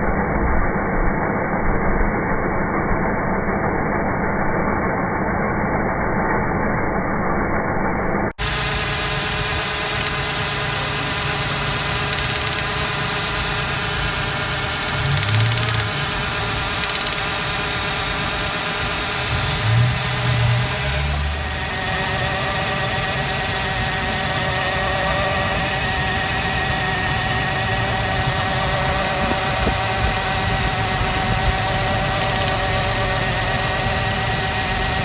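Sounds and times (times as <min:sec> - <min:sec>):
car engine idling with misfire: 0:08.4 - 0:35.0.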